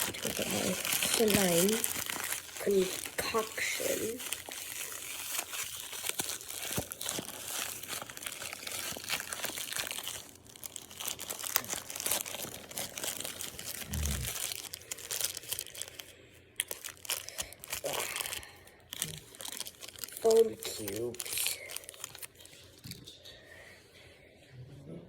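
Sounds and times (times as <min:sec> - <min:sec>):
plastic bag crinkling and tearing: 0:00.0 - 0:23.0.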